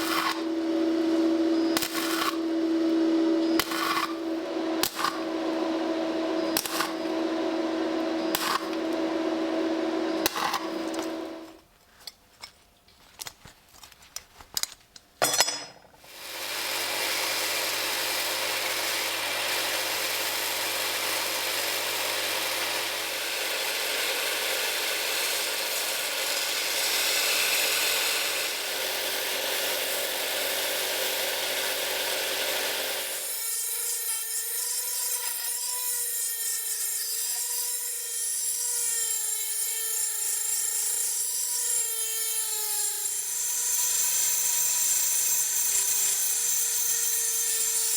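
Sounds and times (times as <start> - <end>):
electric power tool running: 0.0 - 11.6, 16.1 - 33.5.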